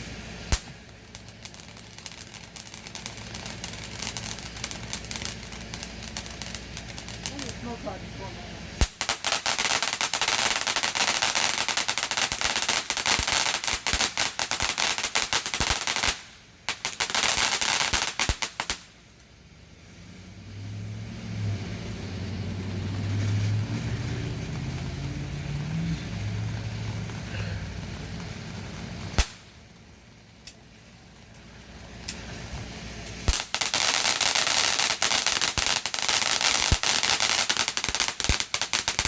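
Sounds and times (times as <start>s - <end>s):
low steady engine drone: 0.0s - 9.2s, 18.8s - 33.6s
firework crackling: 0.0s - 39.0s.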